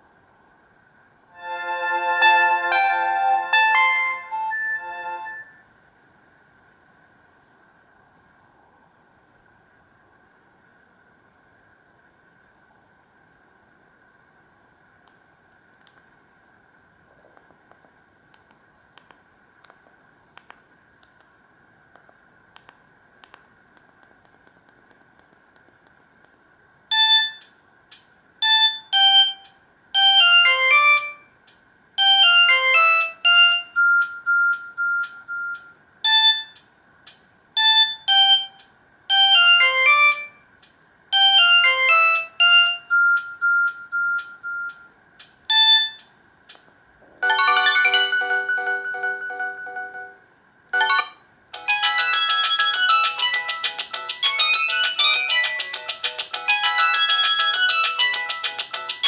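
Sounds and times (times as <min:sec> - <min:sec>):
faint high whine: 0:00.0 - 0:58.3
ringtone held chord: 0:01.3 - 0:05.6, 0:30.0 - 0:31.2, 0:32.0 - 0:36.5, 0:37.7 - 0:40.4, 0:41.2 - 0:44.7, 0:47.2 - 0:50.2, 0:50.8 - 0:59.0
phone ringtone beeping melody: 0:01.4 - 0:05.6, 0:26.9 - 0:27.4, 0:28.4 - 0:29.4, 0:30.0 - 0:31.2, 0:32.0 - 0:36.6, 0:37.6 - 0:40.4, 0:41.2 - 0:44.9, 0:45.5 - 0:46.0, 0:47.2 - 0:50.2, 0:50.8 - 0:59.0.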